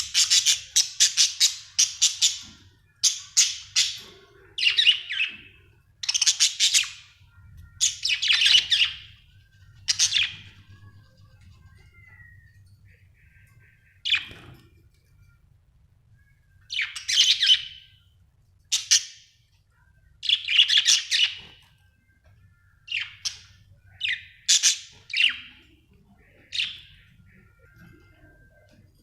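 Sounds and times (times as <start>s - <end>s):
budgerigar chirping: 0.0s - 4.0s, 6.0s - 7.2s, 22.9s - 27.4s.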